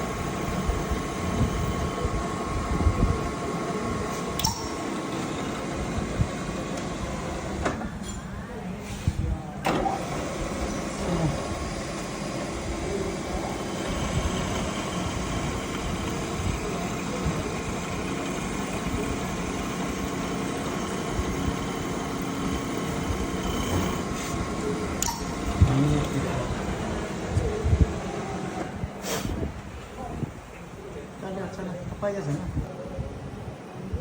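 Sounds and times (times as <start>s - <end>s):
metalworking machine humming: 0.0s - 7.7s, 9.7s - 28.8s
held tones: 4.4s - 5.1s, 25.0s - 25.9s.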